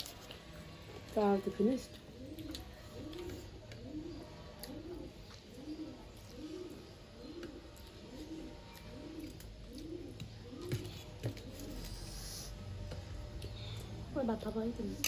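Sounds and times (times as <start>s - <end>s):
pigeon cooing: 1.8s - 13.8s.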